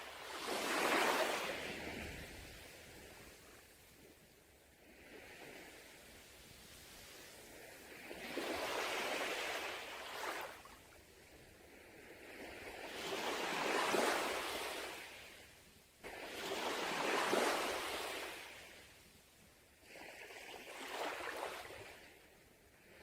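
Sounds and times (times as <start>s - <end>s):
sea waves breaking on beach: 0.0s - 3.8s, 4.8s - 10.8s, 11.6s - 15.4s, 16.0s - 18.8s, 19.8s - 22.1s.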